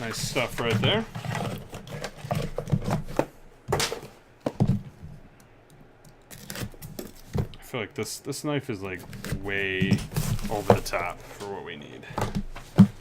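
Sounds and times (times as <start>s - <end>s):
knife cutting cardboard box: 0.0s - 3.3s
box handling scraping and knocks: 0.0s - 5.1s, 9.0s - 11.5s, 12.1s - 13.0s.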